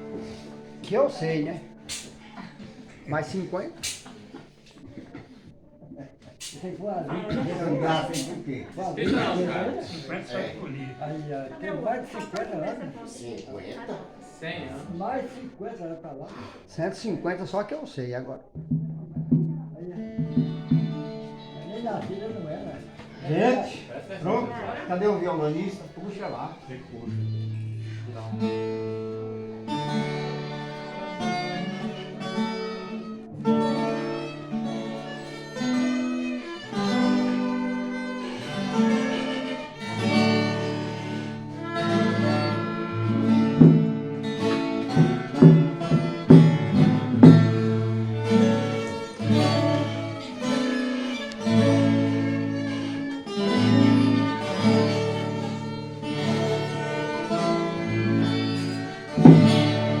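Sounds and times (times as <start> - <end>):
acoustic guitar strumming: 0.0 - 4.7, 6.4 - 10.8, 18.5 - 60.0
bowed string instrument: 0.0 - 15.4, 18.5 - 60.0.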